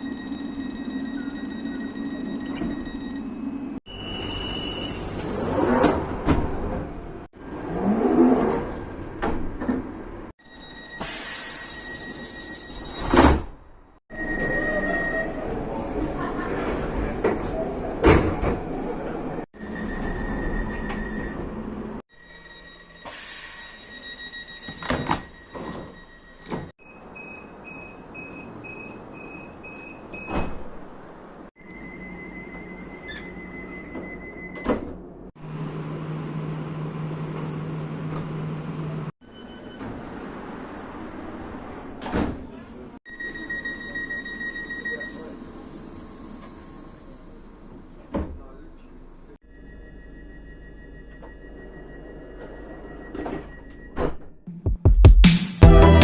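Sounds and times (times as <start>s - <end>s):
door-closing beeps: 0.0s - 3.3s, 10.4s - 13.5s, 22.3s - 30.6s, 31.7s - 35.0s, 39.2s - 40.1s, 43.1s - 45.3s, 49.7s - 54.3s.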